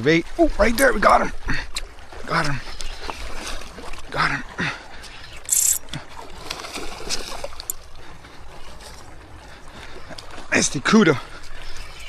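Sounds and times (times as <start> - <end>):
fish splashing in water: 1.8 - 9.3.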